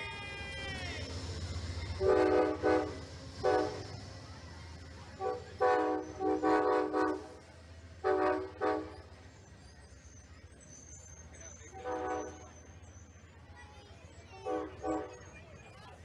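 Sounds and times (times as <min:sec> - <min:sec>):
train rumbling: 0:00.0 - 0:16.0
locomotive air horn blasts: 0:02.0 - 0:04.0, 0:05.2 - 0:07.4, 0:08.0 - 0:09.1, 0:11.8 - 0:12.5, 0:14.4 - 0:15.2.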